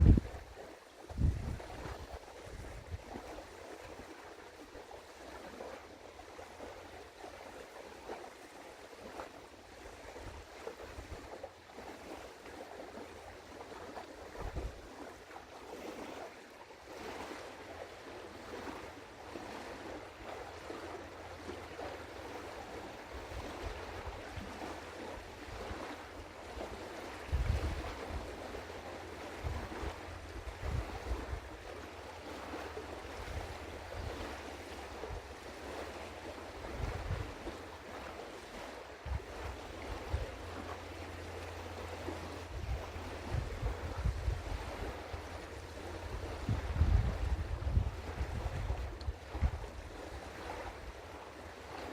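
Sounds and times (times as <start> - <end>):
wind gusts on microphone: 0.0 - 4.2, 14.2 - 15.1, 22.6 - 40.8, 42.1 - 51.9.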